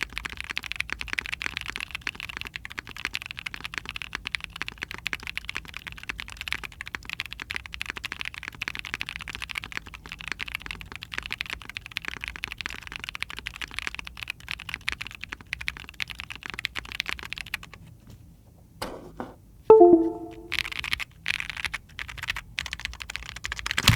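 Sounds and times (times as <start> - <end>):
typing on mechanical keyboard: 10.4 - 17.6, 21.3 - 23.8.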